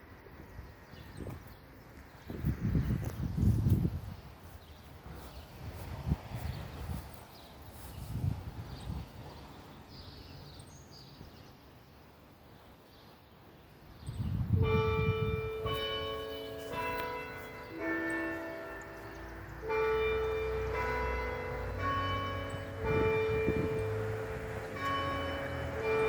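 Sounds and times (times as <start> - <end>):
church bells ringing: 14.5 - 26.0.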